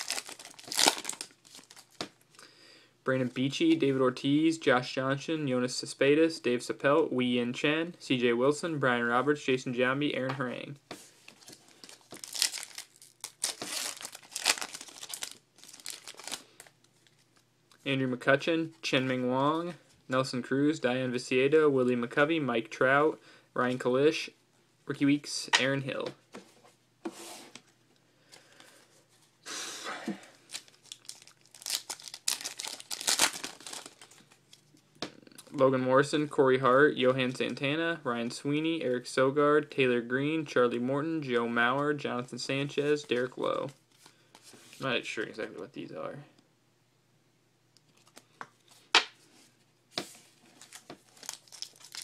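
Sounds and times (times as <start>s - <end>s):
wrapper crinkling: 0.0s - 2.3s, 11.3s - 17.4s, 30.4s - 34.8s, 50.4s - 52.0s.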